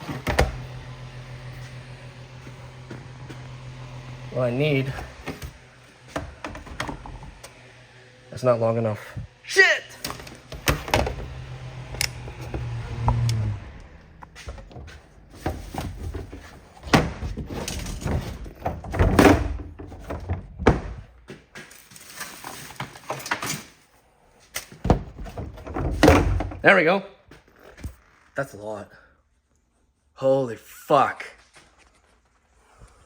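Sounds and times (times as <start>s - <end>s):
low steady hum: 0.0s - 21.0s
knocks and clatter of handling: 14.2s - 23.7s, 24.5s - 26.6s.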